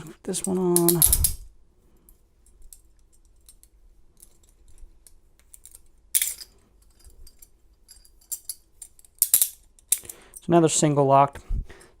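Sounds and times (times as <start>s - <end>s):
metal handcuffs clicking: 0.4s - 1.4s, 2.5s - 10.4s.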